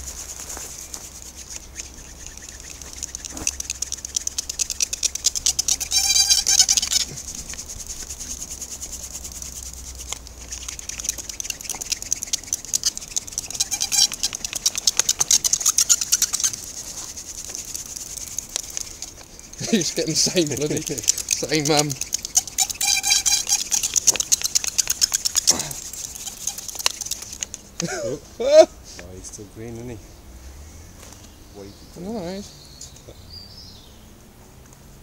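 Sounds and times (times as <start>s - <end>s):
wood-on-wood scraping: 0.0s - 27.6s
brief squeak: 5.8s - 7.1s, 22.6s - 23.7s.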